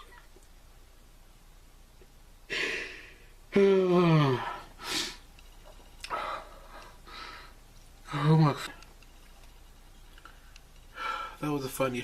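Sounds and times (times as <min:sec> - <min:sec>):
person breathing sharply: 0:02.5 - 0:03.3, 0:04.2 - 0:05.2, 0:06.1 - 0:08.4, 0:10.9 - 0:11.4.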